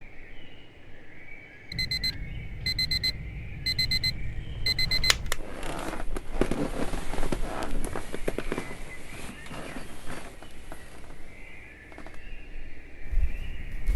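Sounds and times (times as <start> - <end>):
digital alarm clock beeping: 1.7 - 5.2
sharp clicks: 1.7 - 6.6
rustling and small knocks: 5.0 - 12.4.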